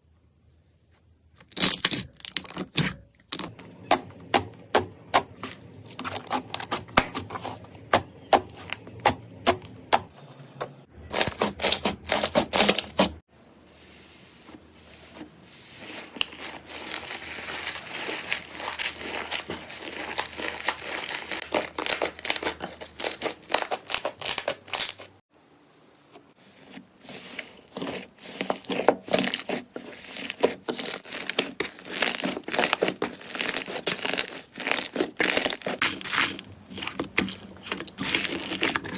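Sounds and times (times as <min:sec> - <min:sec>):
slime crackling and clicking: 0:16.2 - 0:25.0, 0:29.1 - 0:38.9.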